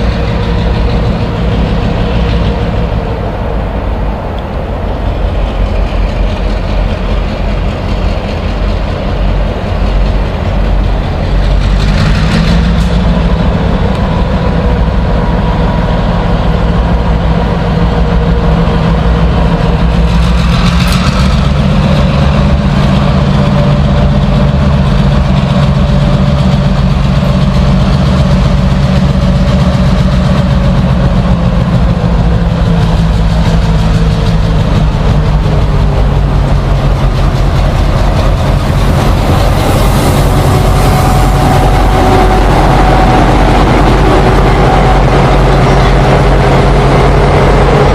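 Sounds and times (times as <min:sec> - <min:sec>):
diesel locomotive engine: 0:00.0 - 0:47.9
rising and falling whine: 0:33.9 - 0:47.9.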